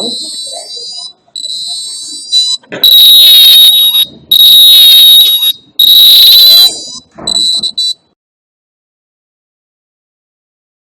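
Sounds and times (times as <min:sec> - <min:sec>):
high buzzer beeps: 0:00.0 - 0:08.0.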